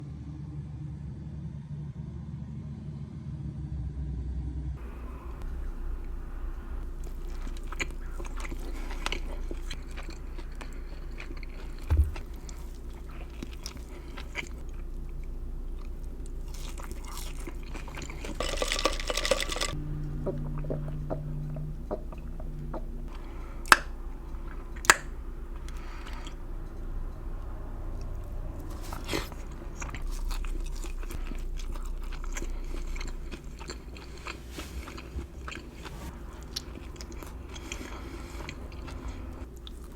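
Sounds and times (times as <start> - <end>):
low steady hum: 0.0 - 39.9
chewing and biting food: 4.8 - 39.9
mouth clicks: 20.0 - 24.0.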